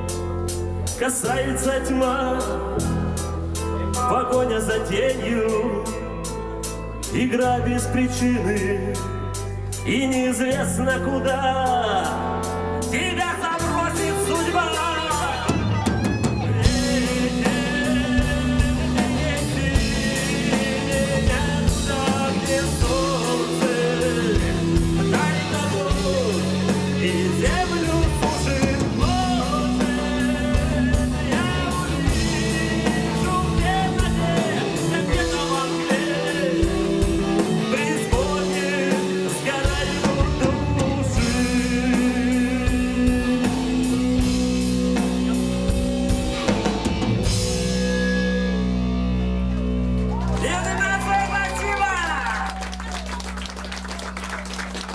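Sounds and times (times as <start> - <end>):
bass notes: 0.0 - 54.9
guitars: 0.0 - 54.9
drum kit beat: 13.3 - 48.0.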